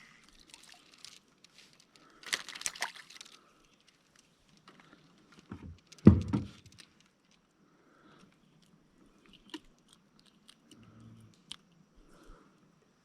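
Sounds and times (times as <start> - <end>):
thump against boat: 5.5 - 6.7.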